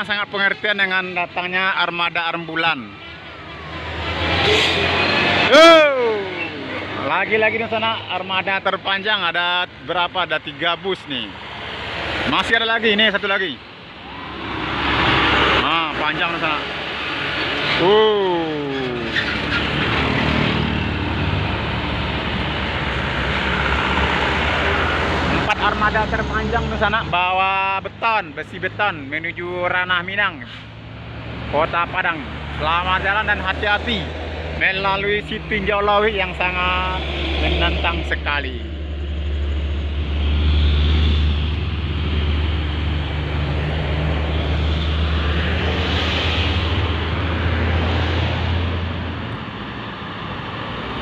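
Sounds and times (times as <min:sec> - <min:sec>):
road noise: 0:00.0 - 0:51.0
heavy truck driving past: 0:02.9 - 0:08.1, 0:11.0 - 0:27.1, 0:32.2 - 0:51.0.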